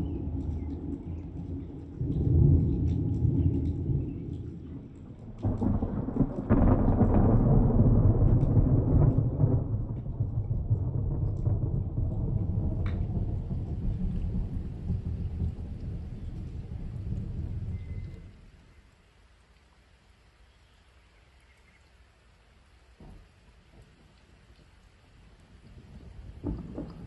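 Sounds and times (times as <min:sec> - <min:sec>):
thunder rumbling: 0:00.0 - 0:18.6, 0:25.6 - 0:27.0.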